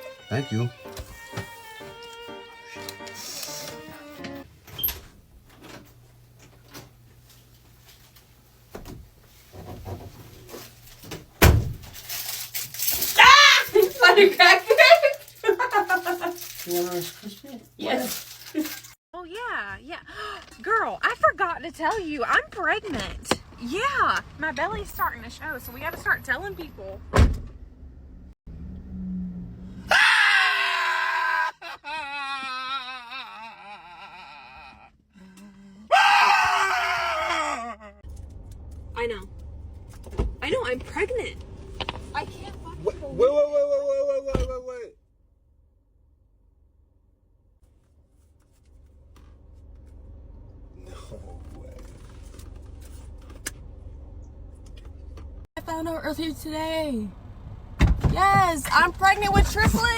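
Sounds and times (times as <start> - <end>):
person screaming: 13.2 - 13.9, 29.9 - 35.0, 35.9 - 38.0.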